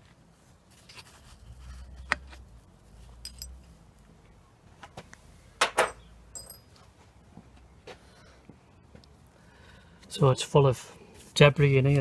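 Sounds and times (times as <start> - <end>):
metallic tool clinks: 3.2 - 3.7, 5.8 - 6.8.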